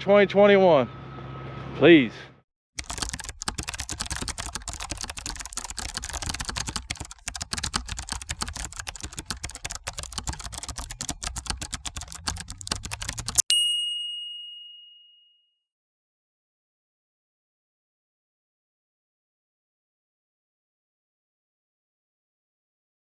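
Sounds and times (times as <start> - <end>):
typing key clicks: 2.8 - 13.4
bell ding: 13.4 - 15.4.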